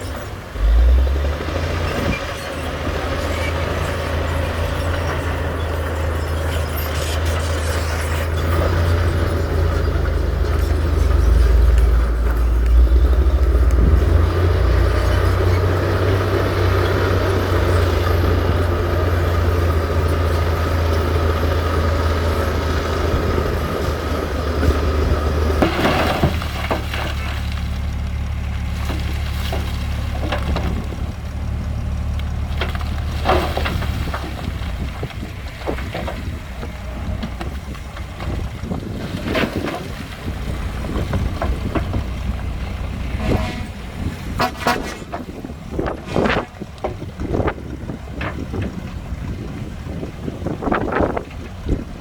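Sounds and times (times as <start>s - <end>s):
diesel construction machinery running: 0.0s - 52.0s
dense rattling noise: 1.8s - 52.0s
knocks and clanks: 23.8s - 27.7s, 28.7s - 31.3s, 32.1s - 49.0s.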